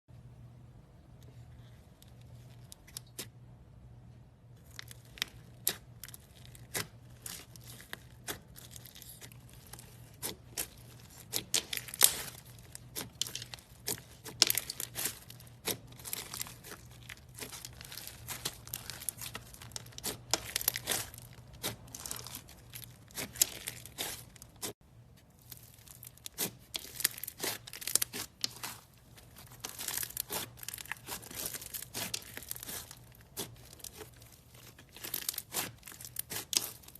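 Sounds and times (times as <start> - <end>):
slime crackling and popping: 4.6 - 36.9.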